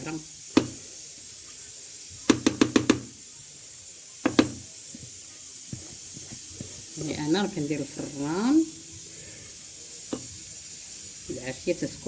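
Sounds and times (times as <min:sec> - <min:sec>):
steady hiss: 0:00.0 - 0:12.0
kitchenware knocking on hard surface: 0:02.3 - 0:03.1, 0:04.2 - 0:04.6.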